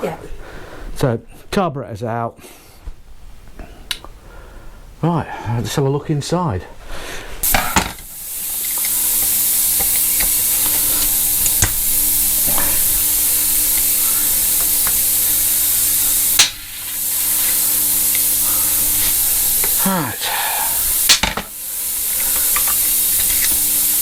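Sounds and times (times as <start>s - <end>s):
spray hiss: 7.4s - 24.0s.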